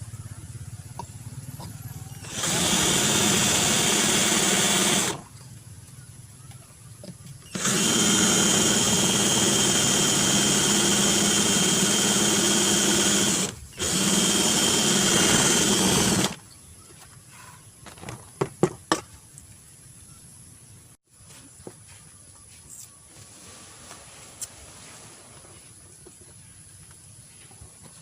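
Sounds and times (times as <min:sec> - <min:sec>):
electric drill boring: 0:02.2 - 0:05.2, 0:07.5 - 0:16.4.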